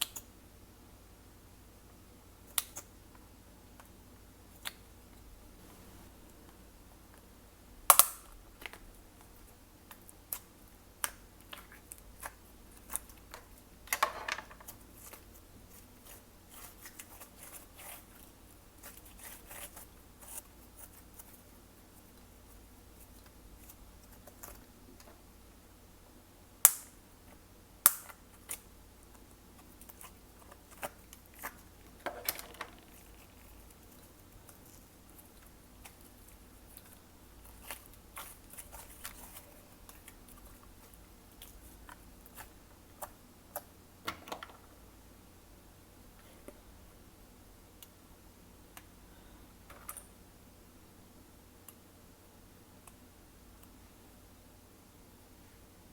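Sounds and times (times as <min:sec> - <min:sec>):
loud slime snaps: 0:07.9 - 0:08.3.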